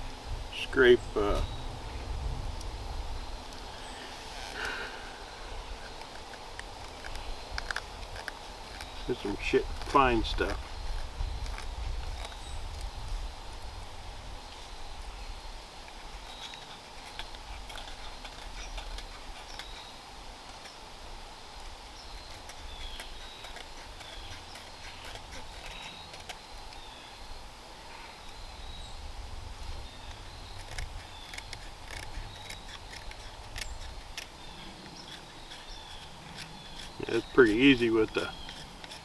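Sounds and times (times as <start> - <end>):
birds chirping: 0.0 - 12.7, 22.0 - 39.0
knife saw scraping wood: 3.5 - 12.6, 16.2 - 19.9, 22.0 - 26.4, 29.8 - 39.0.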